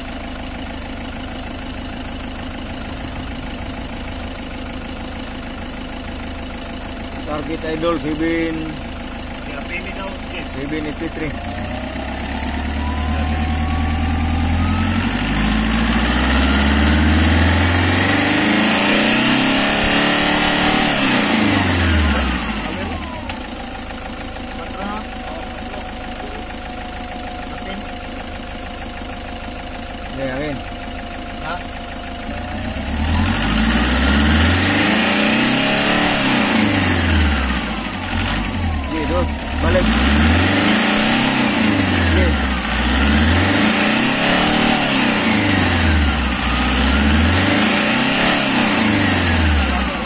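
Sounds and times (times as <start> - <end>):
van engine revving: 0.0 - 50.0.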